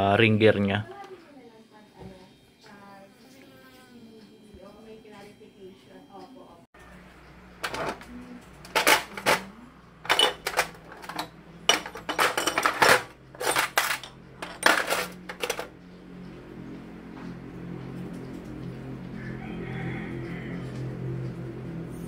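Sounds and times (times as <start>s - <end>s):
small metal parts clinking: 8.6s - 15.7s.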